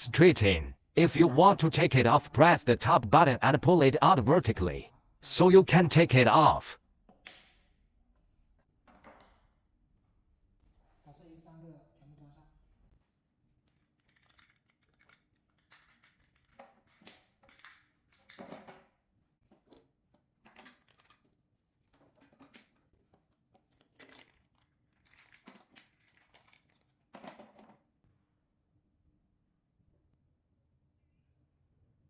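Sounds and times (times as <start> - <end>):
cables rustling and crinkling: 13.6 - 18.4, 19.5 - 27.1.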